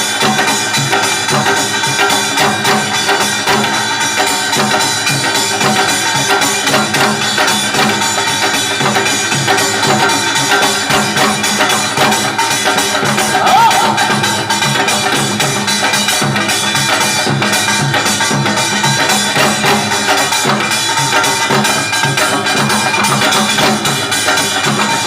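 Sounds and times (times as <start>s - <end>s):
hourglass drum beating a rhythm: 0.0s - 25.0s
held melodic tones: 5.2s - 21.4s.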